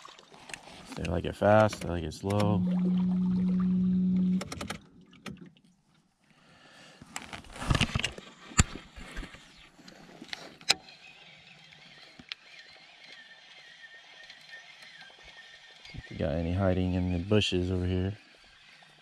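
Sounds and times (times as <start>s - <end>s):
voice holding low note: 1.9s - 4.6s.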